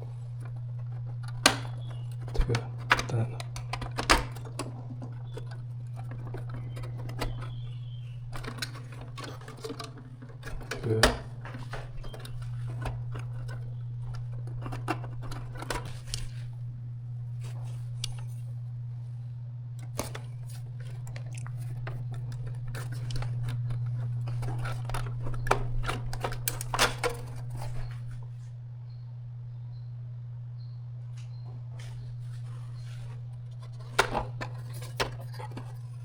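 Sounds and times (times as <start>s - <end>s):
steady low hum: 0.0s - 36.0s
metal and plastic parts clicking: 0.4s - 16.3s, 19.8s - 28.0s, 33.5s - 36.0s.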